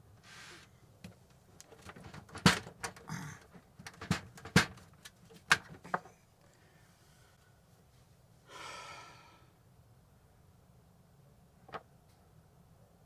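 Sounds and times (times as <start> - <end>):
short scrapes: 0.2 - 0.7
hard objects clicking and knocking: 1.0 - 6.2.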